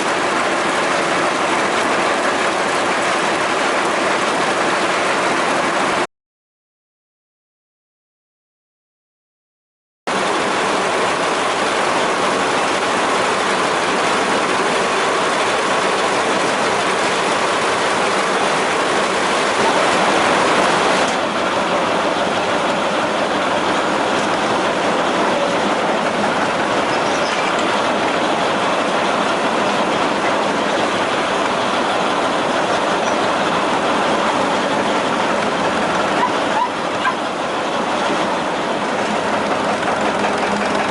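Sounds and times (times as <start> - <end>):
gas engine running with knock: 37.3 - 40.9.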